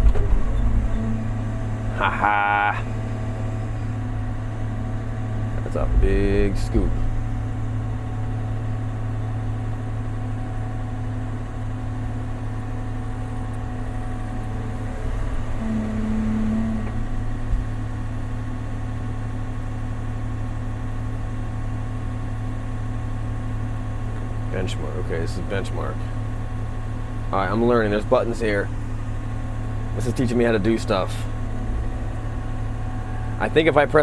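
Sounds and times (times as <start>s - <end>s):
short extra tone: 0.0s - 5.7s, 14.2s - 17.8s
excavator diesel engine running: 0.0s - 34.0s.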